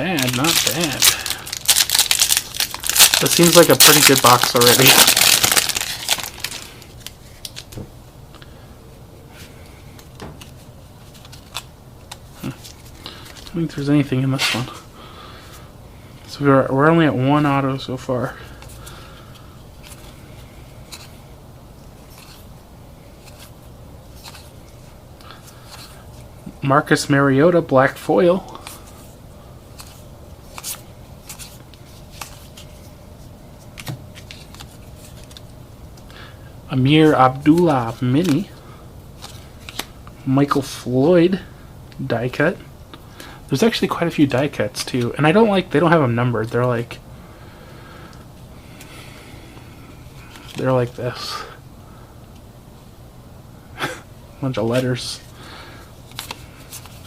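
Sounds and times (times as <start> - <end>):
foil wrapper crinkling: 0.0 - 7.8
cards clicking and rustling: 0.2 - 7.8, 9.9 - 13.6, 29.8 - 32.8, 33.7 - 35.5, 37.4 - 38.5, 39.2 - 39.9, 50.2 - 50.7, 56.1 - 57.0.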